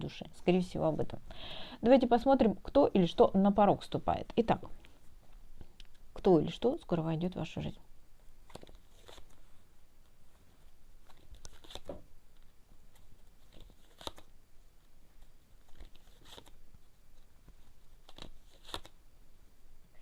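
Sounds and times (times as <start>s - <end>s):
cards clicking and rustling: 11.0s - 12.0s, 18.0s - 19.0s.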